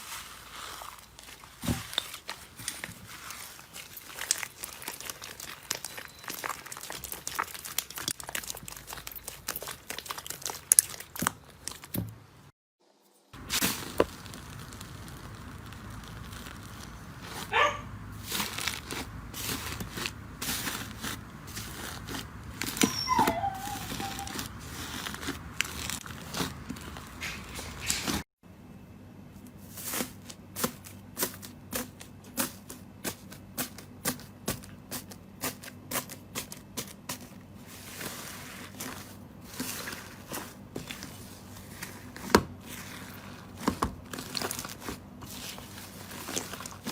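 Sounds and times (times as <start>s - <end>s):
slime crackling and popping: 0.7s - 12.0s, 13.4s - 17.5s, 18.1s - 28.2s, 37.7s - 46.9s
slime squeaks: 1.2s - 12.0s, 13.4s - 28.2s.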